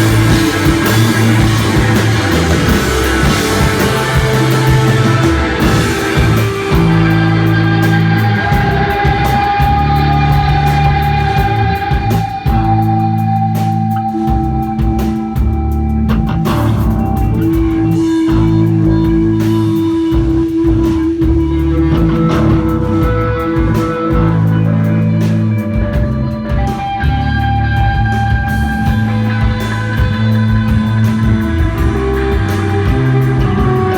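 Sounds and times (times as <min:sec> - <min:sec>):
drum beat: 0:00.0 - 0:13.2
bass guitar line: 0:00.0 - 0:33.9
electric guitar droning notes: 0:00.0 - 0:33.9.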